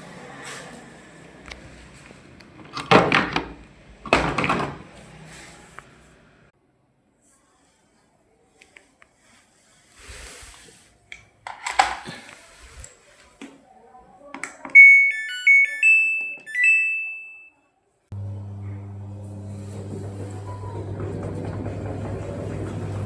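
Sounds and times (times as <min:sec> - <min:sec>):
machine motor humming: 0:18.2 - 0:23.0.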